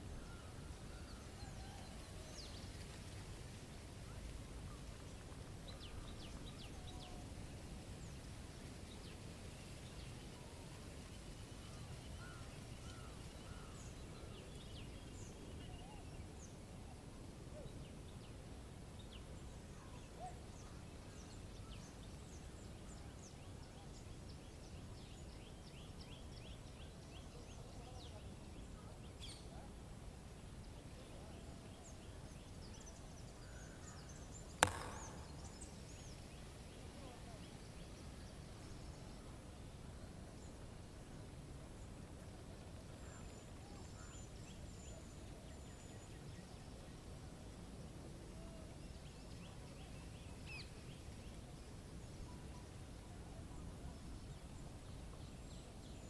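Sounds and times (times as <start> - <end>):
distant bird chirps and trills: 0.0 - 3.3, 4.1 - 8.2, 8.9 - 16.8, 30.4 - 40.6, 43.0 - 47.0.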